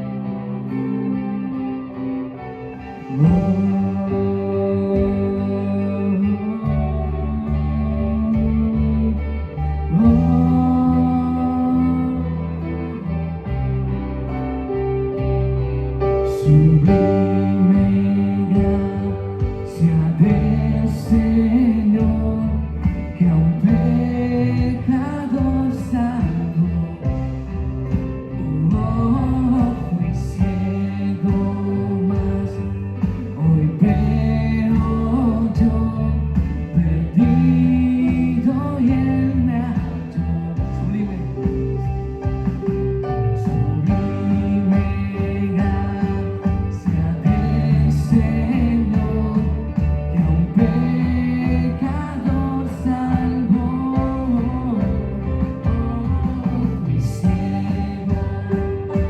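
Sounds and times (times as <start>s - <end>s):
person singing: 0.0s - 59.0s
worship band playing: 0.0s - 59.0s.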